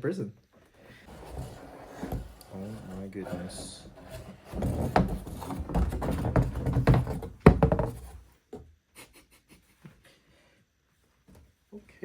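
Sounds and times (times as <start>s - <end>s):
cardboard box rustling and scraping: 0.8s - 8.3s.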